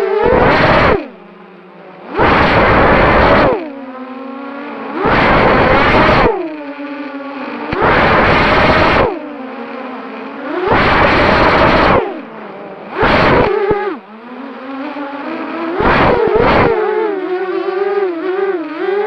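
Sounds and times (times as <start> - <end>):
loud rushing noise bursts: 0.0 - 1.1, 2.1 - 3.6, 4.9 - 6.4, 7.7 - 9.2, 10.5 - 12.3, 12.9 - 14.0, 15.8 - 16.8
quadcopter motors whining: 0.0 - 19.0.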